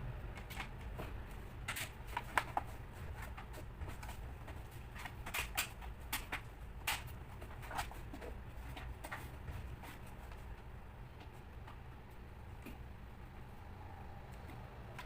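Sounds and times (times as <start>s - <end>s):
low steady hum: 0.0s - 15.0s
hands handling laptop parts: 0.4s - 10.6s.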